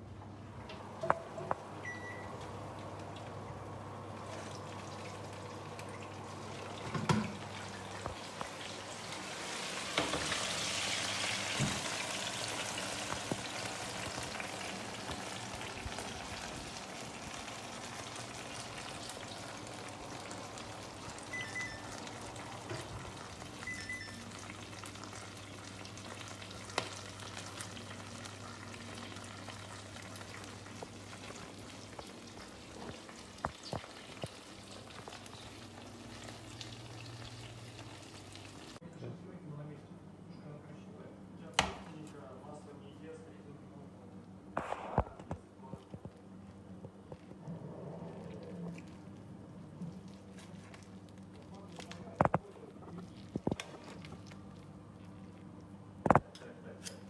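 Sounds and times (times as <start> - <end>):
meat sizzling in hot fat: 7.4 - 38.8.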